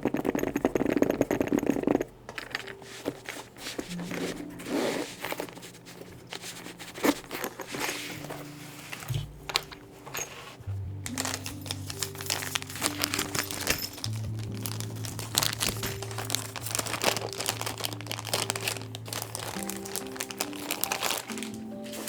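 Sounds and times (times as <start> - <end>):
lo-fi background music: 1.9 - 22.0
packaging crinkling and clicking: 11.1 - 22.0.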